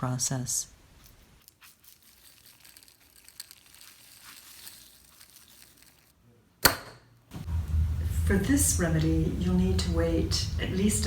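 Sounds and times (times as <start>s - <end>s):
salt crunching and rustling: 1.0s - 6.2s.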